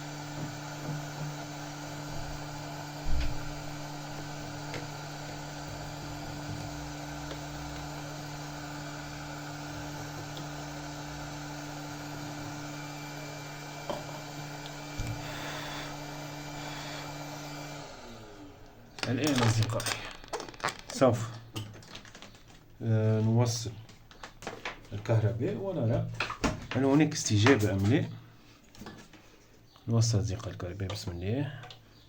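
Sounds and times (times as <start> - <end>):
electrical mains hum: 0.0 - 32.0.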